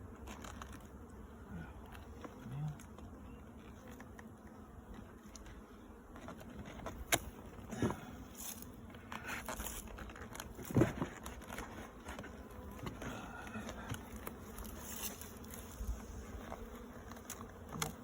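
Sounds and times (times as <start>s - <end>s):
honeybees buzzing: 0.0s - 18.0s
knocks and scrapes of wood: 4.9s - 18.0s.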